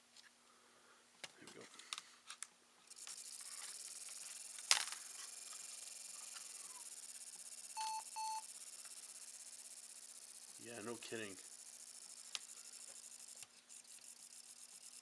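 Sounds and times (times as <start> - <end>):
laptop cooling fan whirring: 2.8 - 15.0
laptop short beeps: 7.8 - 8.4.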